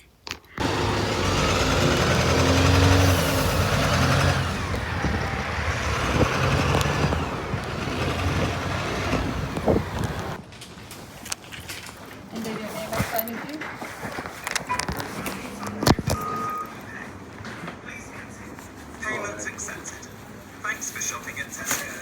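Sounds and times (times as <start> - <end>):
vehicle engine and road noise: 0.6 - 10.4.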